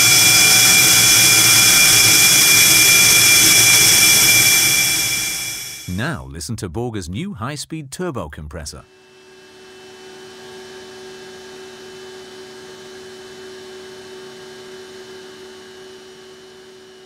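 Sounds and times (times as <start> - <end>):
turbo compressor humming: 0.0 - 5.9.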